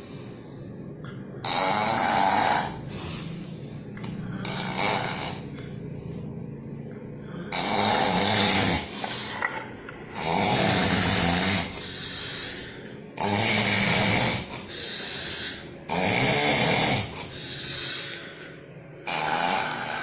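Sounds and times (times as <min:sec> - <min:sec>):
quiet breath: 0:00.0 - 0:01.4, 0:02.7 - 0:04.6, 0:05.5 - 0:07.6, 0:11.6 - 0:13.2, 0:17.1 - 0:19.0
heavy snoring: 0:01.0 - 0:06.4, 0:07.2 - 0:18.4, 0:19.0 - 0:20.0.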